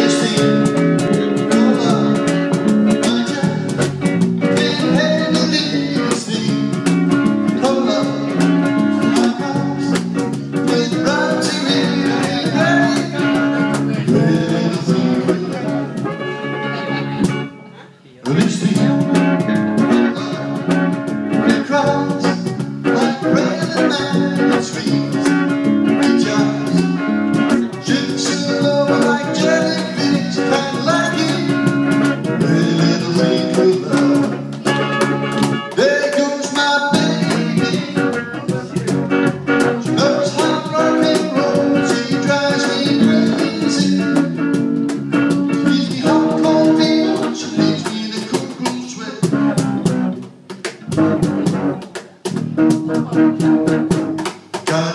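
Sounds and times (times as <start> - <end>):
person singing: 0.0 - 50.0, 54.6 - 54.9
guitar: 0.0 - 54.9.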